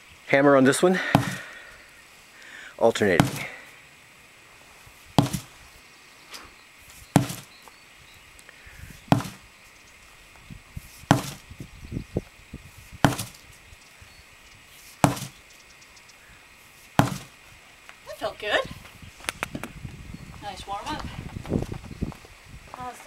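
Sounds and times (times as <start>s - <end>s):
sledgehammer heavy blows: 1.0s - 1.5s, 3.1s - 3.6s, 5.2s - 5.5s, 7.2s - 7.5s, 9.1s - 9.4s, 11.0s - 11.4s, 13.0s - 13.3s, 15.0s - 15.4s, 17.0s - 17.3s.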